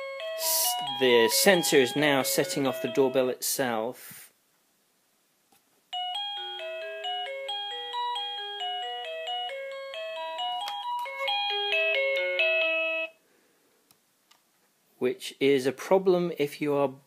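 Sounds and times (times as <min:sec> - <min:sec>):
doorbell electronic chime melody: 0:00.0 - 0:03.3, 0:06.0 - 0:13.2.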